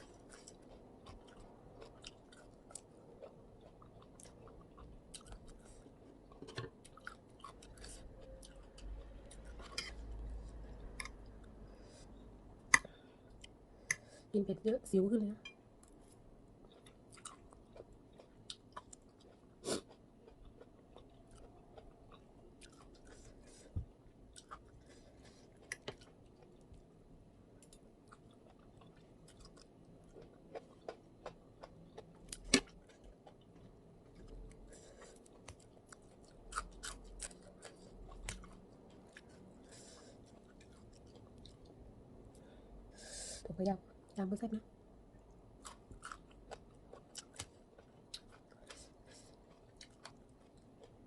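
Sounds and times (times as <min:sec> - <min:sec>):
person chewing food: 0:00.0 - 0:14.2, 0:15.8 - 0:42.6, 0:45.3 - 0:51.0.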